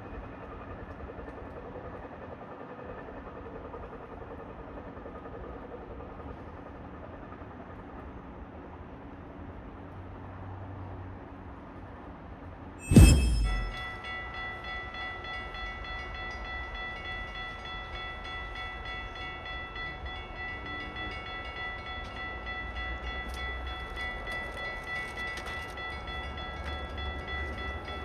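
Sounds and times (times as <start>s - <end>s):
low rumble of rail traffic: 0.0s - 28.0s
loud thump: 12.8s - 13.8s.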